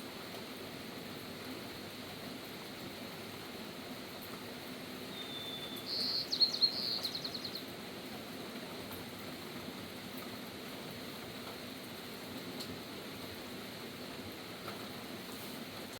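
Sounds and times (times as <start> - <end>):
rain hissing: 0.0 - 15.9
songbird singing: 5.1 - 7.7.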